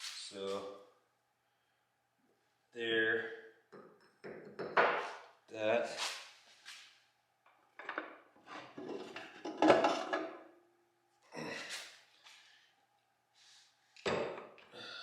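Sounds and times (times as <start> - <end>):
metal parts clanking and scraping: 7.8 - 10.4.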